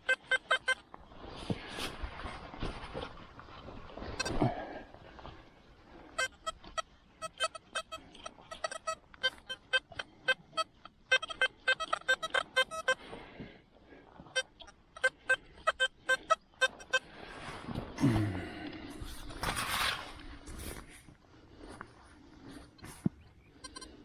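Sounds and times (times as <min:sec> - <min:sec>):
metal detector beeps: 0:00.0 - 0:00.8, 0:04.2 - 0:04.5, 0:06.2 - 0:13.0, 0:14.4 - 0:17.0, 0:23.6 - 0:23.9.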